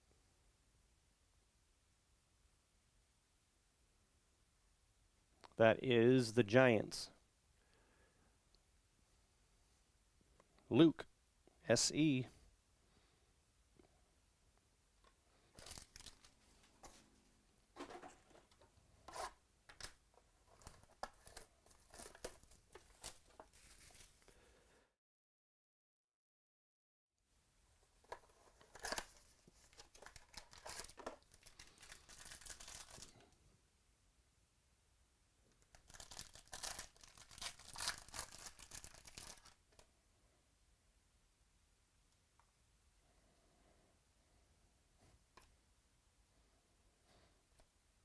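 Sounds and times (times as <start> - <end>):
packaging tearing and crinkling: 15.6 - 16.4, 20.6 - 24.2, 28.6 - 33.2, 35.7 - 39.6.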